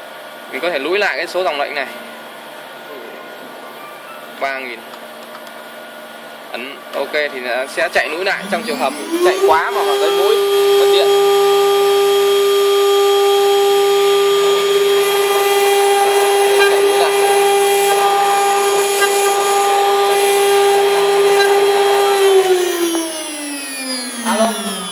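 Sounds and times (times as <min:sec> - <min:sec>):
spindle motor whining: 0:07.0 - 0:24.9.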